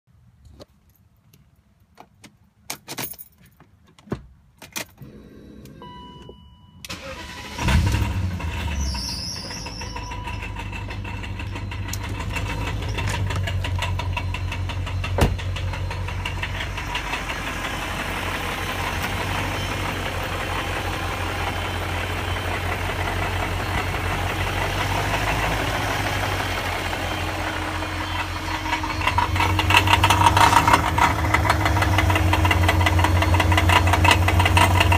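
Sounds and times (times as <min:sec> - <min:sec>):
short tone: 0:05.8 - 0:07.0, 0:09.0 - 0:16.2, 0:17.2 - 0:31.1
engine cranking and starting: 0:06.9 - 0:34.9
engine running with loud rattle: 0:07.2 - 0:34.9.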